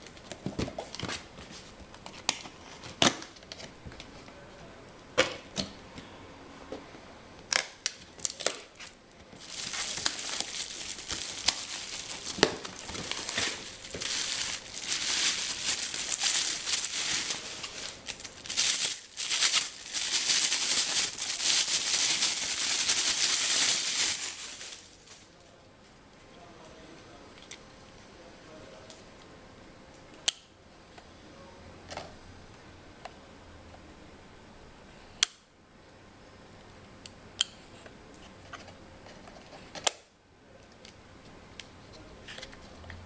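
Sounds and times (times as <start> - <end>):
plastic packaging crinkling: 7.7 - 25.3.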